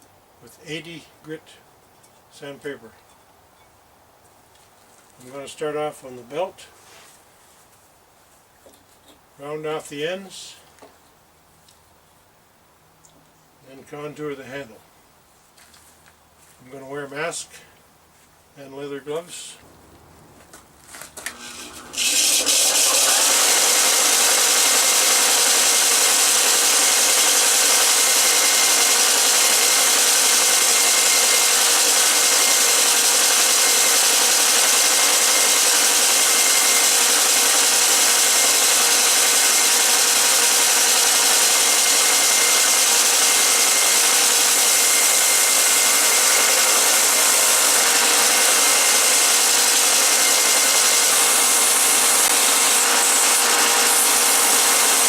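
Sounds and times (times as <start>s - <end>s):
belt sander rasping wood: 21.2s - 55.0s.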